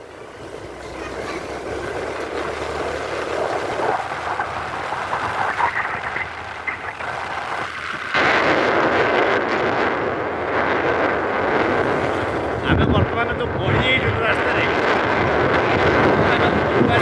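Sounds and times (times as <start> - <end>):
motor scooter engine: 0.0 - 8.2
road noise: 0.0 - 17.0
wind on microphone: 0.0 - 17.0.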